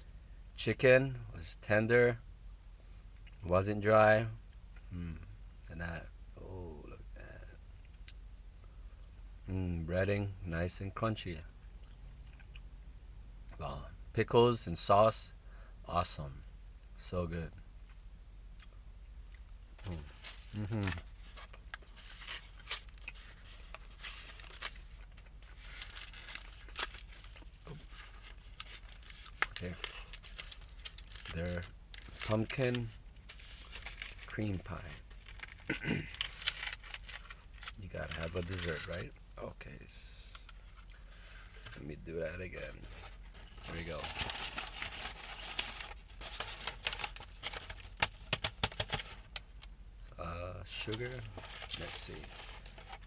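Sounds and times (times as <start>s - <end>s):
paper packaging rustling: 19.8s - 39.2s, 40.4s - 41.8s, 42.4s - 49.4s, 50.7s - 53.0s.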